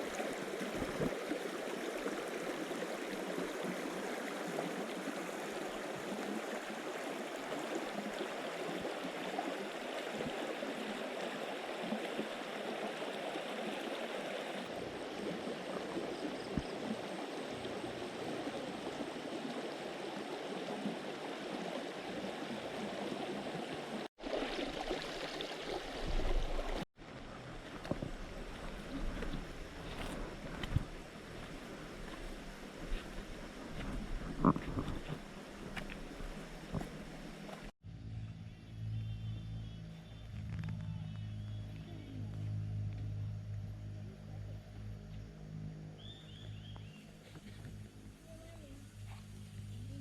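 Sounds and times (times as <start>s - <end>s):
river water rushing: 0.0s - 16.0s.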